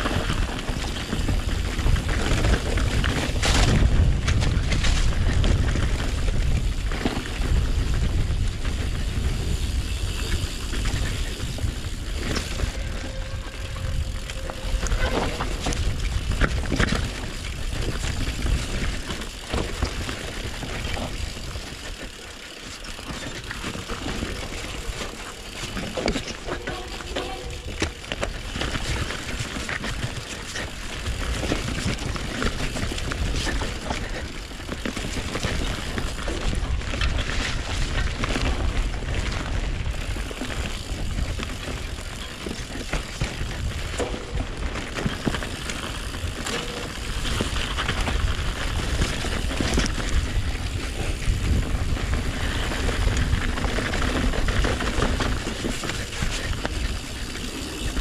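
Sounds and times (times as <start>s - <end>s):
bike rattling over bumps: 0.0s - 58.0s
tyres on dirt and rock: 0.0s - 58.0s
low rumble: 11.3s - 17.0s.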